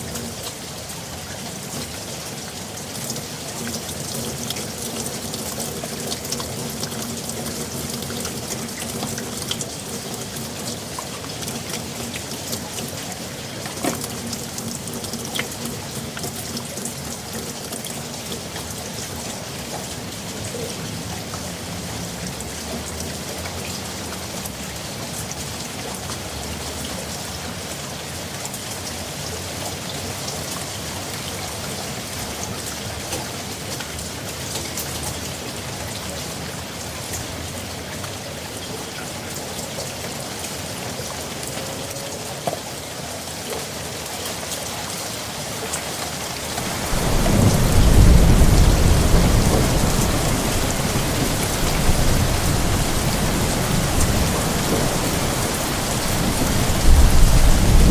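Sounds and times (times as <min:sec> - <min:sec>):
steady rain falling: 0:00.0 - 0:57.9
low thunder roll: 0:46.6 - 0:57.9.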